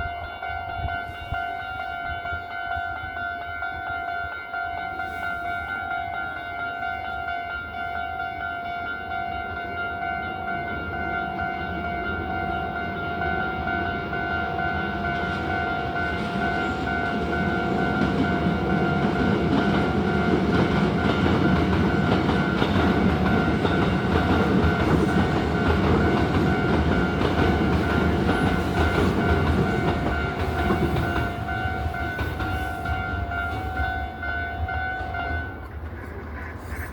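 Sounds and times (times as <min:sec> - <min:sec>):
train wheels clattering on rail: 0:13.6 - 0:36.9.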